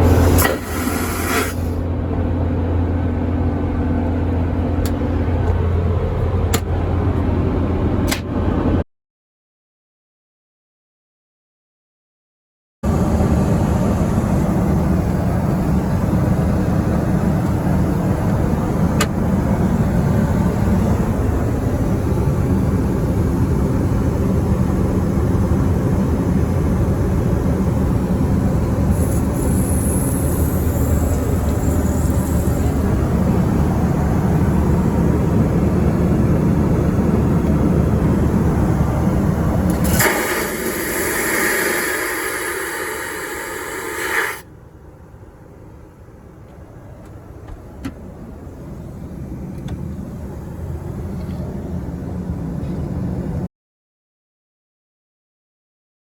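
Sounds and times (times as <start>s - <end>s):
toilet flushing: 39.8s - 44.4s.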